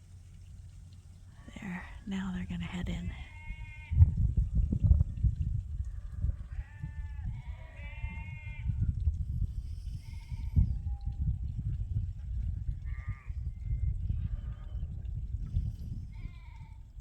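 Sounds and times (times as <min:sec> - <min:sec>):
low rumble: 0:01.3 - 0:06.5
sheep bleating: 0:03.2 - 0:04.0, 0:06.5 - 0:08.8.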